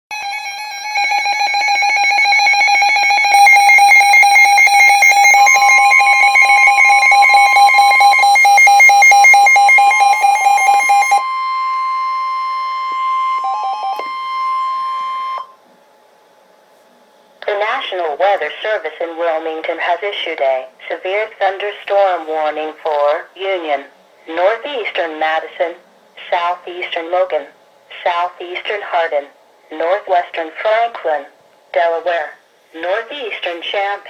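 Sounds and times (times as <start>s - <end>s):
pulsing electronic alert tones: 0.1s - 15.5s
long steady tone: 0.1s - 15.7s.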